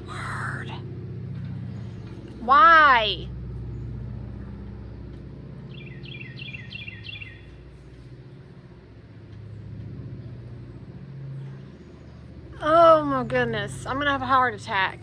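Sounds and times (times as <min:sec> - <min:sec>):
bird chirping: 0:05.7 - 0:07.6.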